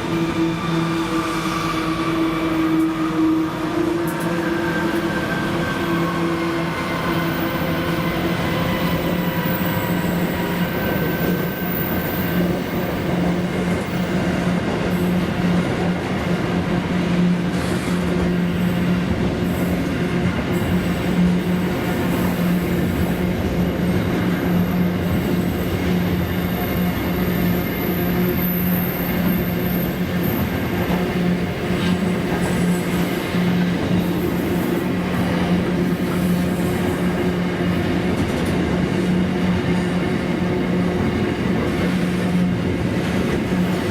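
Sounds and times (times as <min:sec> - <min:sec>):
train wheel squeal: 0:00.0 - 0:15.4, 0:20.5 - 0:37.2
freight train wheel rumble: 0:00.0 - 0:43.9.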